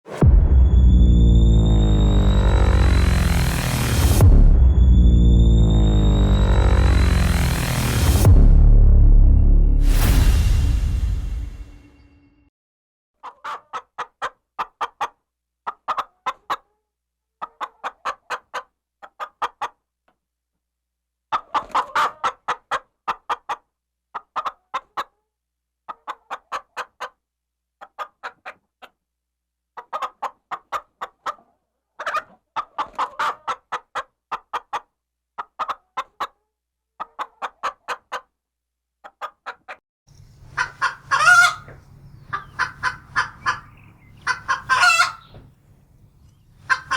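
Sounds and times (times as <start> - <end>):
low hum: 0.1 - 12.4, 40.1 - 46.9
chicken clucking: 13.2 - 16.8, 17.4 - 19.8, 21.3 - 25.2, 25.8 - 27.2, 27.8 - 29.0, 29.8 - 38.4, 39.0 - 46.9
loud chicken call: 40.4 - 45.5, 46.6 - 46.9.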